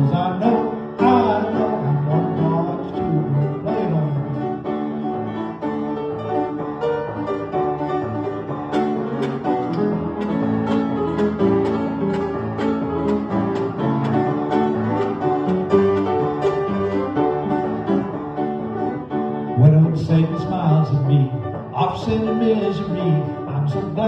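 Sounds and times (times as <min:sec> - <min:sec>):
bowed fiddle notes: 0:00.0 - 0:24.0
piano chords: 0:00.0 - 0:24.0.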